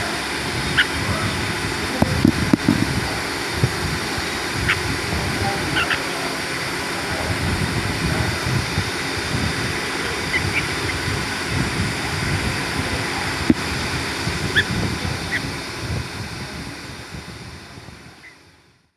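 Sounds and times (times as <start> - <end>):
wind rumbling on microphone: 0.0 - 18.9
high bird chirps: 10.2 - 11.1.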